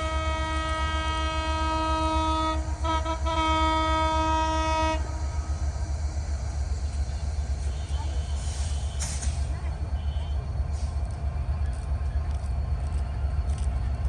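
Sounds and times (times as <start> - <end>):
train horn blast: 0.0 - 5.5
steady low rumble: 5.1 - 14.0.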